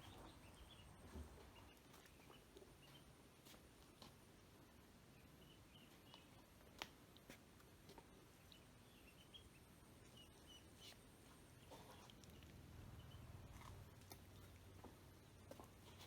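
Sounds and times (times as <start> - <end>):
ducklings peeping: 8.4 - 13.6.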